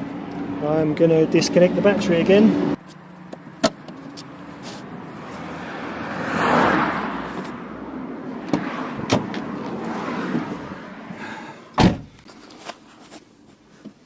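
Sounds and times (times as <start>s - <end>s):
car passing by: 4.6s - 11.6s.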